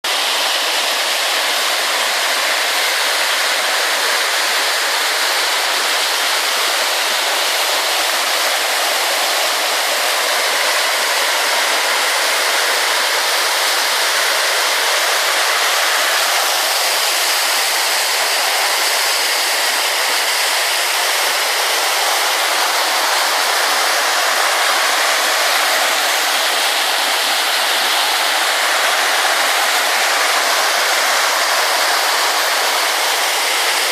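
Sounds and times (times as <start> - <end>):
stream rushing over rocks: 0.0 - 33.9.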